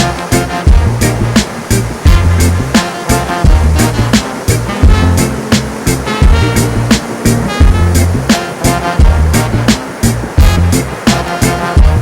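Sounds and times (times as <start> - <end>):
reggae bass line: 0.0 - 12.0
steady drum beat: 0.0 - 12.0.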